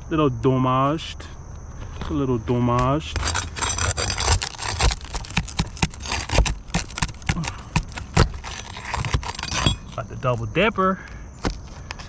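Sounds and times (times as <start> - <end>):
hand tool scraping shingles: 2.0 - 10.5.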